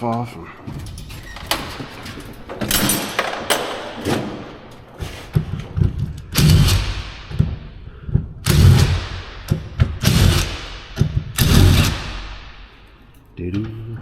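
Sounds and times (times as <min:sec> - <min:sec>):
knocks and thuds on metal panels: 0:01.5 - 0:12.8.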